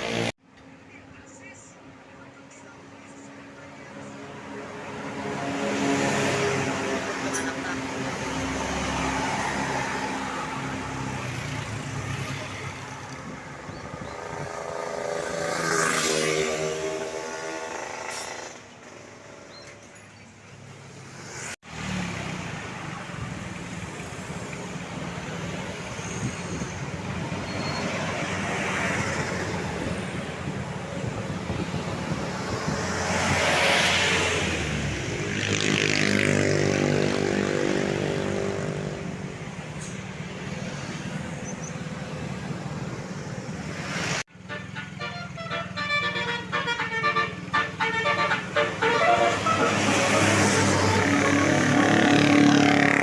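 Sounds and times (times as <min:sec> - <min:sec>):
road traffic passing: 0:00.0 - 0:53.0.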